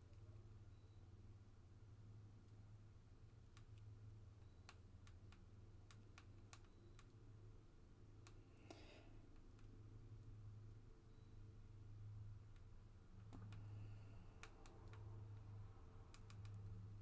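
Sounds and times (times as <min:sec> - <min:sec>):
steady low hum: 0:00.0 - 0:17.0
faint light clicks and taps: 0:03.4 - 0:07.2, 0:12.5 - 0:16.9.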